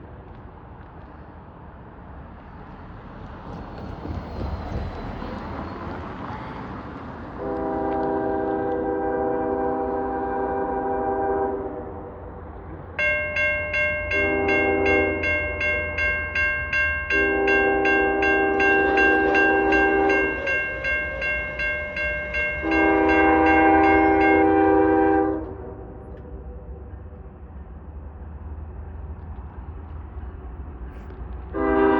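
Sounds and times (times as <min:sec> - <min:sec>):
locomotive air horn blasts: 0:07.4 - 0:12.1, 0:14.0 - 0:15.6, 0:17.1 - 0:26.2, 0:31.5 - 0:31.9
bell ringing rapidly: 0:13.0 - 0:24.4.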